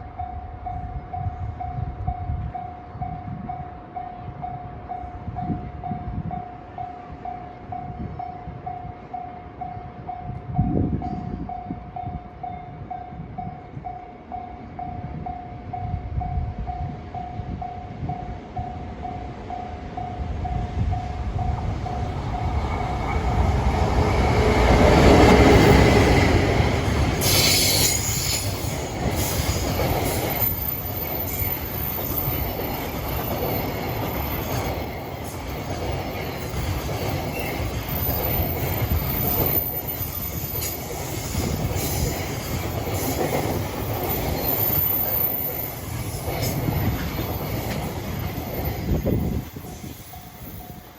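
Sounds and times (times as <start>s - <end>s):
electric locomotive passing: 0.0s - 50.9s
freight wagons clattering over rail joints: 22.6s - 50.9s.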